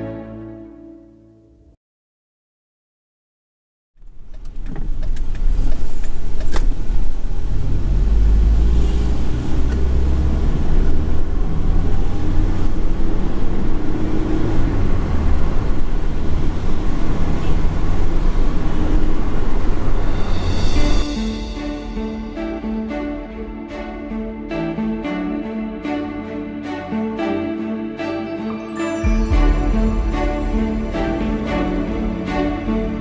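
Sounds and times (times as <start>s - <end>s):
vehicle engine and road noise: 4.0s - 28.0s.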